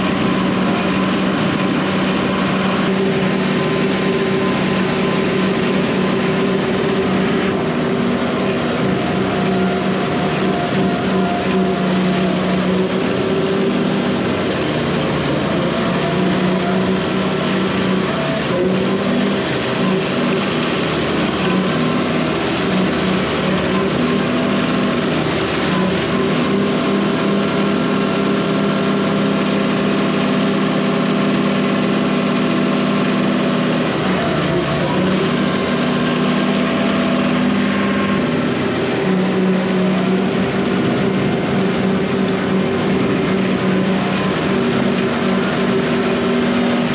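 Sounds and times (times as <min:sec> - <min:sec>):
tractor engine under load: 0:00.0 - 0:46.9.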